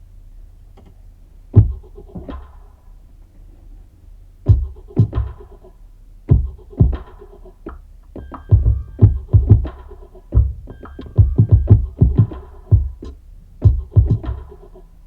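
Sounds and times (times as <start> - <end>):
low steady hum: 0.0 - 15.0
electronic drum machine beat: 1.6 - 2.6, 4.5 - 5.6, 6.3 - 15.0.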